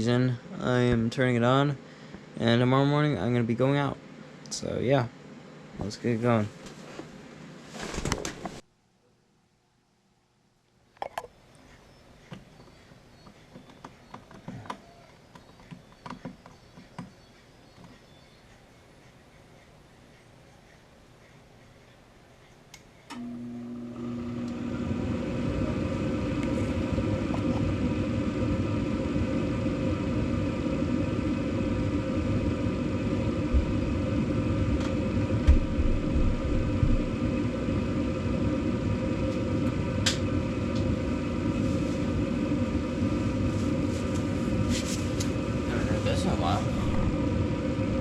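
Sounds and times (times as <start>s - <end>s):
furnace fan motor rushing: 22.7s - 48.0s.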